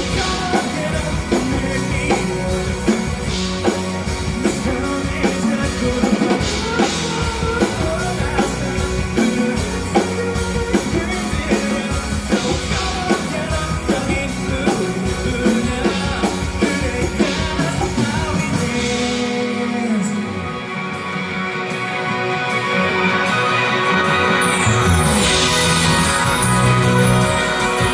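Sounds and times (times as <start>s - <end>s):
drum kit beat: 0.0s - 19.9s, 24.2s - 27.9s
live rock band playing: 0.0s - 27.9s.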